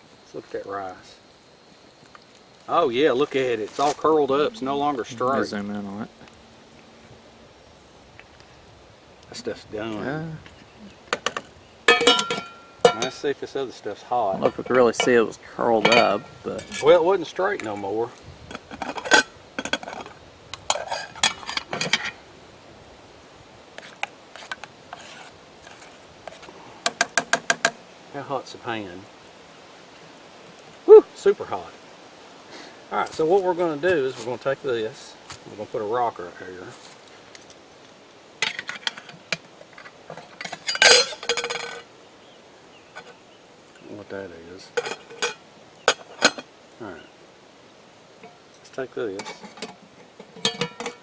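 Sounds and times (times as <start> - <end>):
metal cookware clattering: 11.2 - 13.2, 15.8 - 16.9, 18.5 - 22.2, 38.4 - 39.4, 40.2 - 41.8, 44.8 - 46.4, 49.2 - 51.0
metal spoon scraping a pan: 18.5 - 22.2, 23.8 - 26.5, 38.4 - 41.8, 44.8 - 46.4, 49.2 - 51.0.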